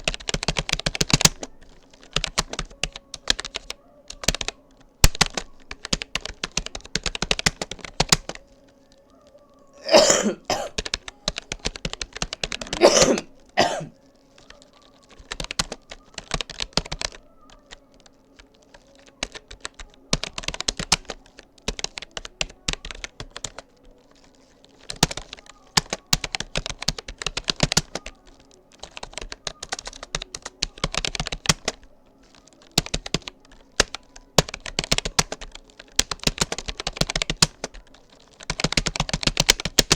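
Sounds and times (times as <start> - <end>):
keyboard keys clicking: 0.0 - 39.9
person coughing: 9.8 - 10.8, 12.6 - 13.9.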